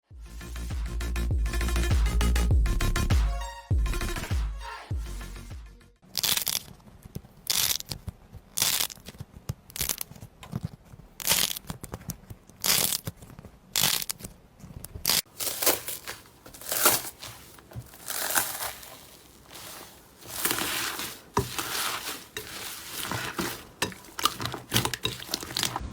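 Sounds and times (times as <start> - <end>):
slime squelching and crackling: 7.4 - 13.2, 15.0 - 25.9.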